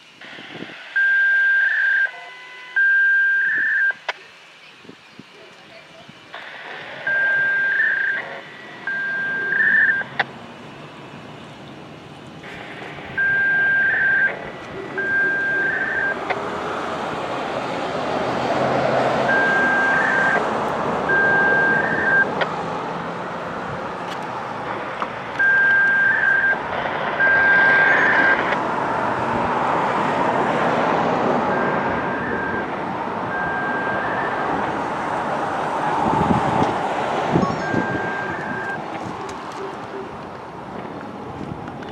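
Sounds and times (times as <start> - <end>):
passing traffic: 0.0 - 41.9
electronic warning beeps: 0.3 - 10.4, 12.4 - 16.5, 19.2 - 22.6, 25.3 - 29.2, 31.4 - 34.9, 37.3 - 38.9.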